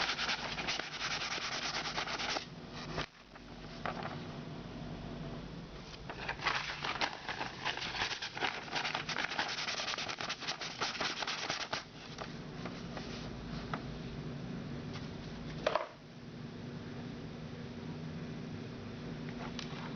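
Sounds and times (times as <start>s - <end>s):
sandpaper scratching: 0.0s - 2.5s, 6.5s - 11.8s
faint steady hum: 0.0s - 19.9s.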